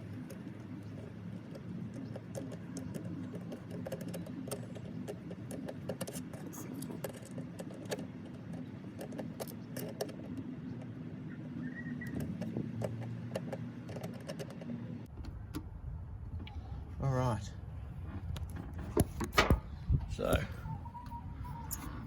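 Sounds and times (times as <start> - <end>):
low steady hum: 14.8 - 22.0.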